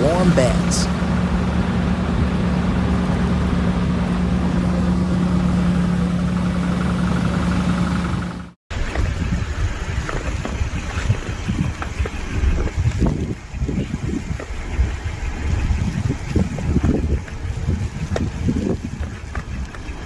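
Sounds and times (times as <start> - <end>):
wind buffeting microphone: 8.8 - 20.0.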